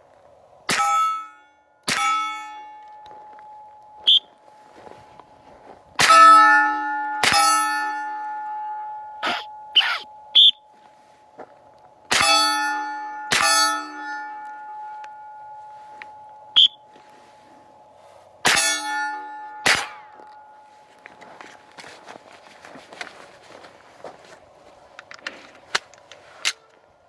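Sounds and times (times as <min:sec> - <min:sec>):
metallic clang of steel targets: 0:00.7 - 0:05.2, 0:06.0 - 0:10.6, 0:12.1 - 0:21.9.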